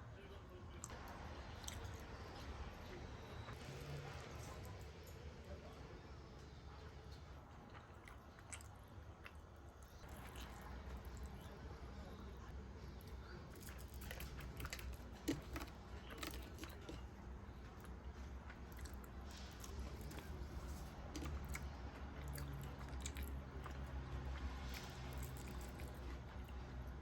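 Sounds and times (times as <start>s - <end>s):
person chewing crunchy food: 7.7s - 11.6s, 13.0s - 26.7s.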